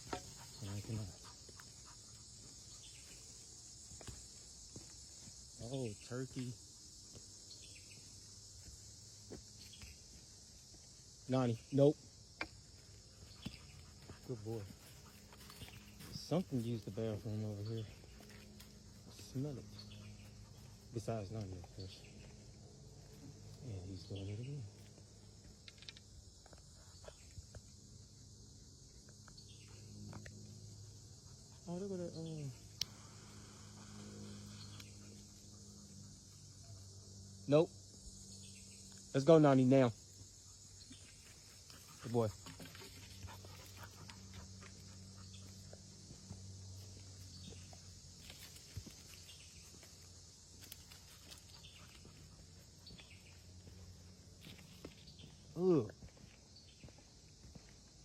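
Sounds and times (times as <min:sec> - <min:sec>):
footsteps on trail: 0:00.0 - 0:05.7, 0:06.9 - 0:11.2, 0:12.2 - 0:23.6, 0:24.6 - 0:27.7, 0:40.9 - 0:58.0
high insect drone: 0:00.0 - 0:58.0
light clicks and chirps: 0:25.6 - 0:27.7.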